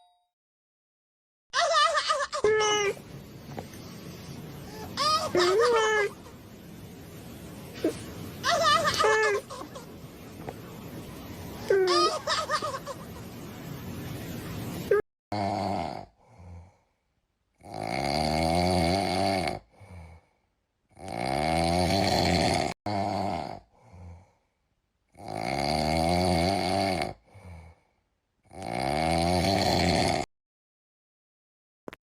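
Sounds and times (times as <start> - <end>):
person snoring: 7.8 - 8.2, 14.9 - 16.9, 17.6 - 20.3, 20.9 - 24.5, 25.1 - 27.9, 28.5 - 30.3.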